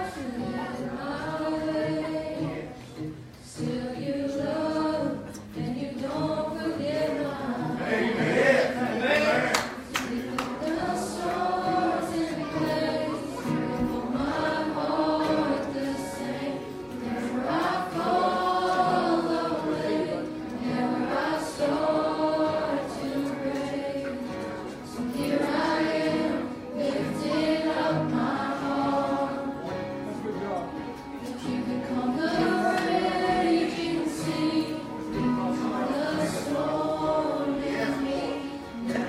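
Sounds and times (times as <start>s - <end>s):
choir singing gospel song: 0.0s - 2.8s, 3.4s - 30.1s, 31.3s - 39.0s.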